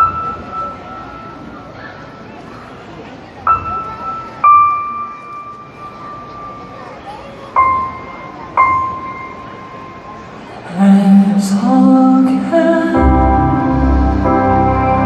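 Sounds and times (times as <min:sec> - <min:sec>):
deep bass line: 0:13.0 - 0:15.0.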